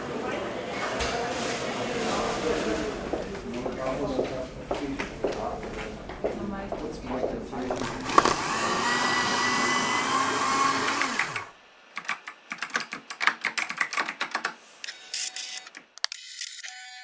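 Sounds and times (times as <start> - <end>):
small electric machine whirring: 7.7 - 11.6
keyboard typing: 12.0 - 14.6.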